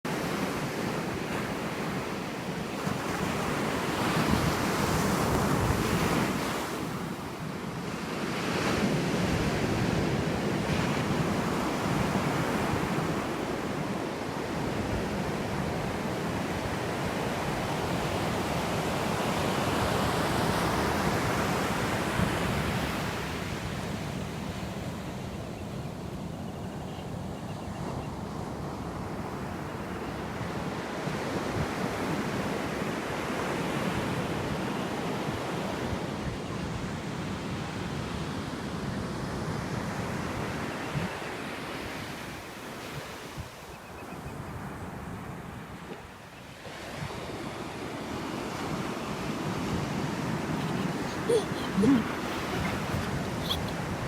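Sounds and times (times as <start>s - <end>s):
ocean surf breaking: 46.7s - 54.0s.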